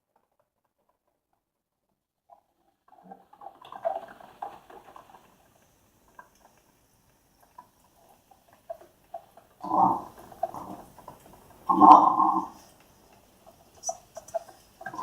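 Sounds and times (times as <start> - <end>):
faint steady hiss: 0.0 - 15.0
coffee makers gurgling and sputtering: 9.6 - 12.6, 14.8 - 15.0.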